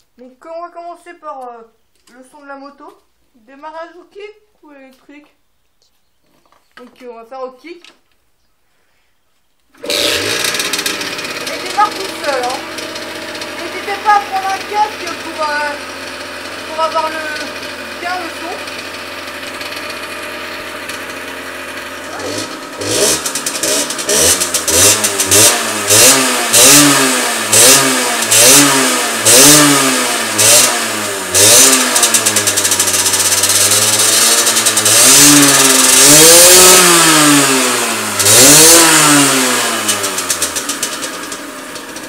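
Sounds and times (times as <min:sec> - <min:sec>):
motorcycle engine idling and revving: 0:09.8 - 0:42.0.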